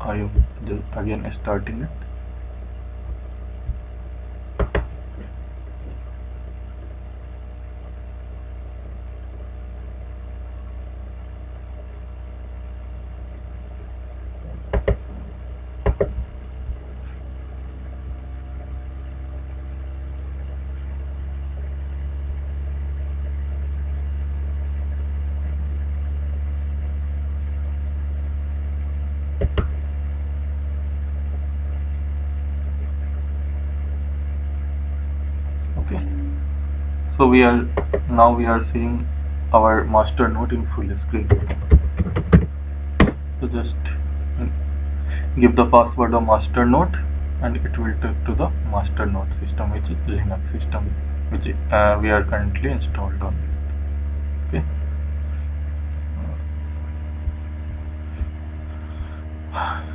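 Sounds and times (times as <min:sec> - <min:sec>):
computer cooling fan humming: 0:00.0 - 0:59.9
sharp clicks: 0:04.6 - 0:05.0, 0:14.7 - 0:15.1, 0:15.8 - 0:16.3, 0:29.4 - 0:29.8.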